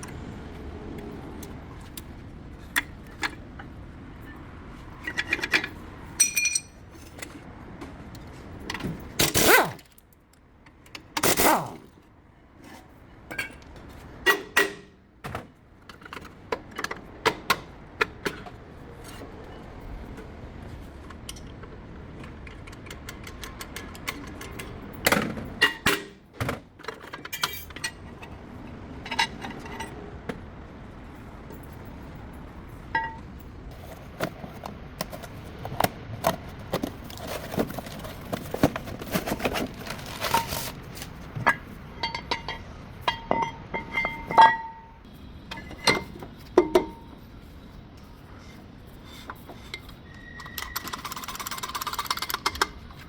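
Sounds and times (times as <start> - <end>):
metal tools clinking: 5.0 - 7.4, 26.8 - 28.4, 36.8 - 47.2.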